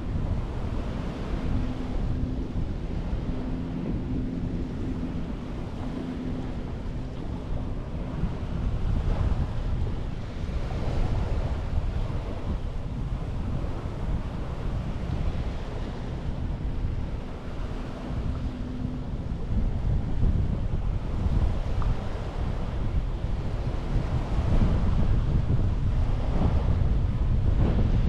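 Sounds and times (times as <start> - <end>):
sea waves washing ashore: 0.0 - 28.0
wind rumbling on microphone: 0.0 - 28.0.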